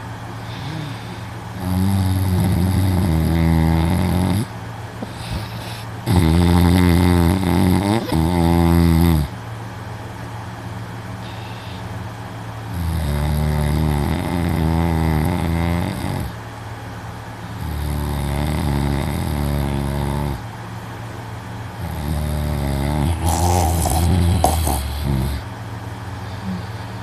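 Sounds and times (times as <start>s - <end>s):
man snoring loudly: 0.5s - 9.4s, 12.7s - 16.4s, 17.5s - 20.4s, 21.8s - 25.4s.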